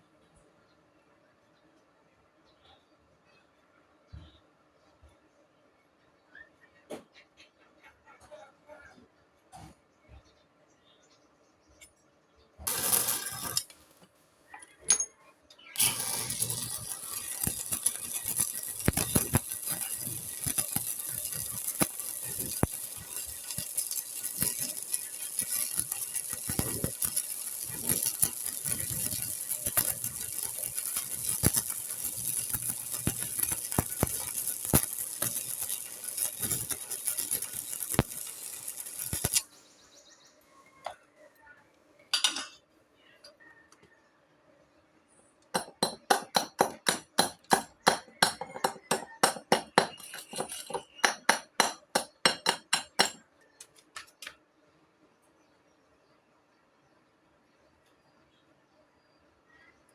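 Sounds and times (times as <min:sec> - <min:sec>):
welding arc strike: 0:12.7 - 0:13.8, 0:15.8 - 0:39.5, 0:45.6 - 0:53.2
welding arc crackling and sizzling: 0:12.7 - 0:14.1, 0:15.8 - 0:39.7, 0:45.6 - 0:53.2.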